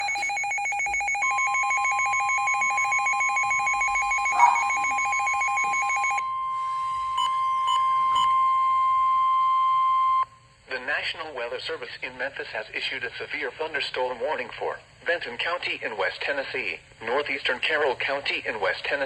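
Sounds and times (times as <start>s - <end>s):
pulsing two-pitch alarm: 0.0s - 10.3s
short beeps: 0.0s - 10.3s
steady warning tone: 0.0s - 10.3s.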